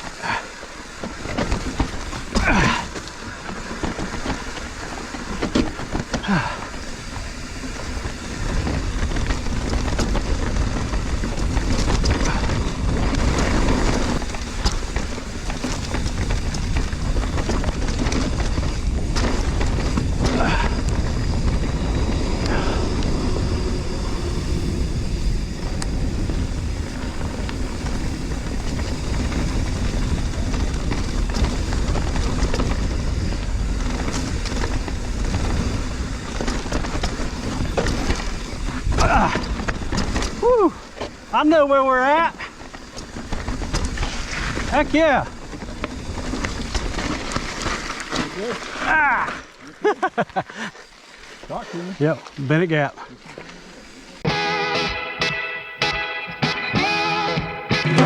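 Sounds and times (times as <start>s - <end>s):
bike rattling: 0.0s - 58.0s
tyres rolling over rough ground: 0.0s - 58.0s
wind rushing over microphone: 1.3s - 41.4s.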